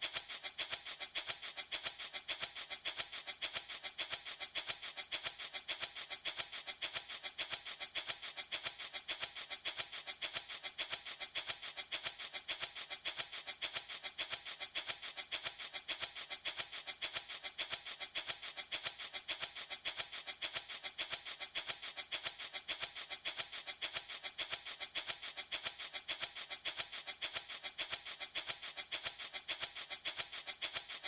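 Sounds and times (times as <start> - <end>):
wooden rattle shaken: 0.0 - 31.0.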